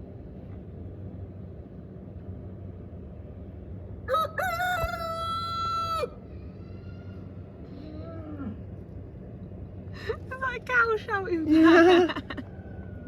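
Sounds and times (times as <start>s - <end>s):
low steady rumble: 0.0s - 13.0s
rooster crowing: 4.1s - 7.3s, 12.2s - 13.0s.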